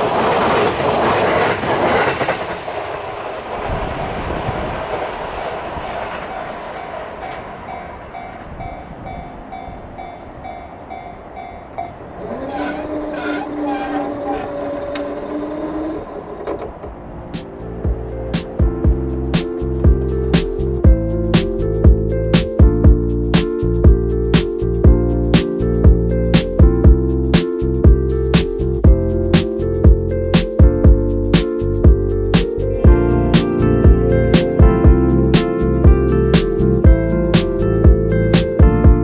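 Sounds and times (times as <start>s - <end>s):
train wheels clattering: 0.0s - 21.5s.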